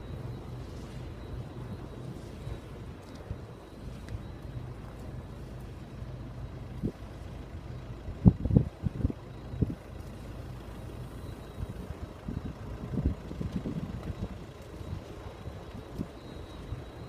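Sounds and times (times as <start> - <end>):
wind turbine humming: 0.0 - 17.0
wind buffeting microphone: 8.1 - 10.0, 11.6 - 17.0.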